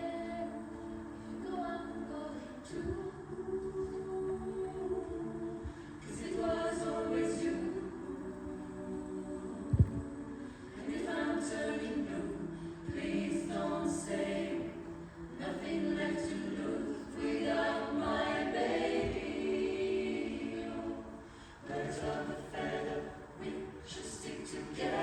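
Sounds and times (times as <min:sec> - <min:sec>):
a cappella vocal harmony: 0:00.0 - 0:25.0.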